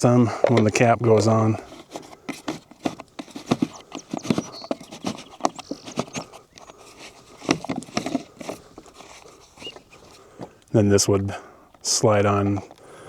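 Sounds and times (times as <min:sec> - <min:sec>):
plastic cap and fitting clicking: 0:00.4 - 0:10.7.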